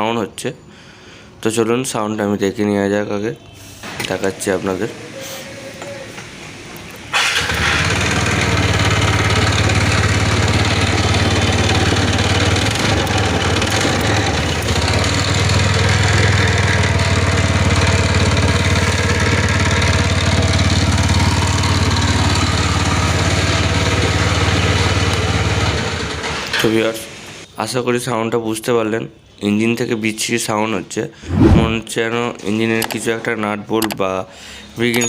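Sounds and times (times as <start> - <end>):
scooter engine idling: 7.2 - 26.3.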